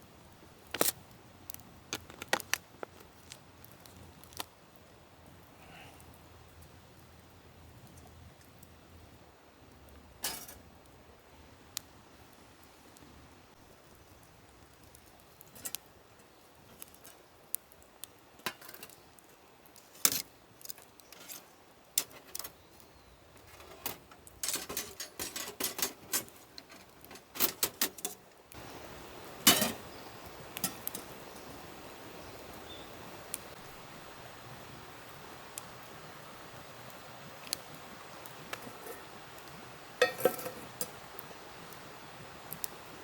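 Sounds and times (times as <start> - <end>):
small hard objects clinking: 40.0 - 41.0.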